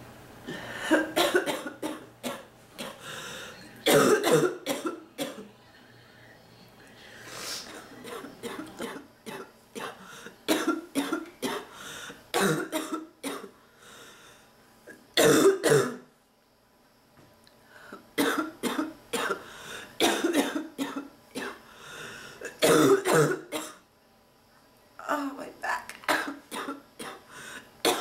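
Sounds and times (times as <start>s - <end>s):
person coughing: 0.8s - 3.0s, 3.8s - 5.4s, 7.7s - 11.7s, 12.4s - 13.5s, 14.9s - 16.0s, 18.2s - 19.4s, 20.0s - 21.6s, 22.4s - 23.8s, 26.1s - 27.2s.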